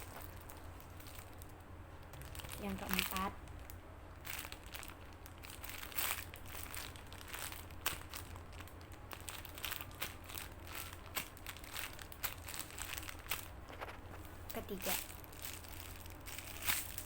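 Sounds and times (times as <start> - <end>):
foam toy crinkling: 0.0 - 17.0
steady low hum: 0.0 - 17.0.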